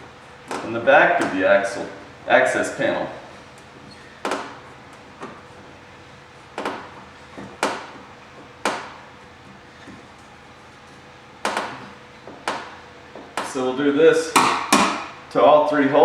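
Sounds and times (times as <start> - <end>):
knocks and clicks of hand tools: 0.5 - 1.9, 4.2 - 5.4, 6.6 - 10.3, 11.4 - 13.6, 14.4 - 15.2.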